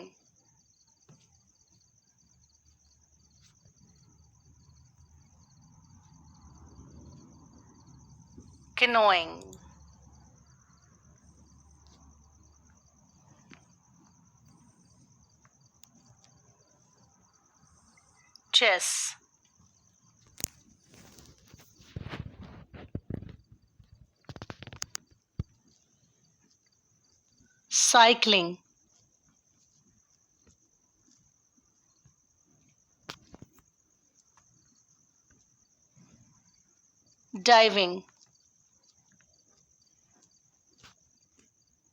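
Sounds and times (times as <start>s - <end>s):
faint high-pitched whine: 0.0s - 28.9s.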